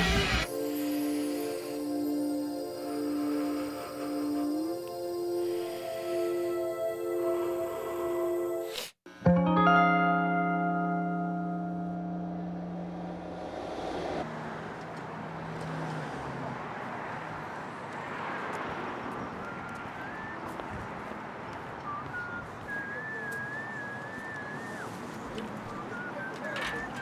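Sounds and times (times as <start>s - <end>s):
piano notes ringing: 0.4s - 14.2s
outdoor background noise: 12.2s - 27.0s
thin wavering whistle-like calls: 19.2s - 27.0s.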